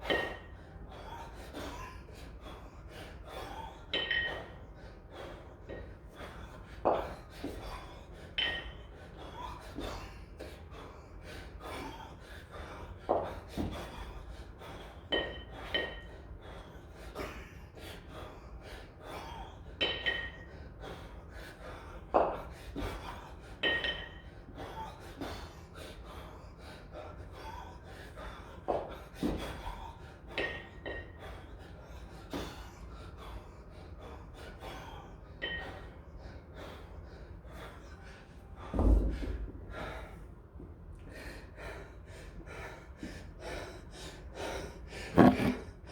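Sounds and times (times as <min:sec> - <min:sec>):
metallic kettlebell clink: 0:00.0 - 0:00.5, 0:03.9 - 0:04.6, 0:08.4 - 0:08.8, 0:23.6 - 0:24.3
person breathing hard: 0:00.0 - 0:40.4, 0:41.0 - 0:45.9.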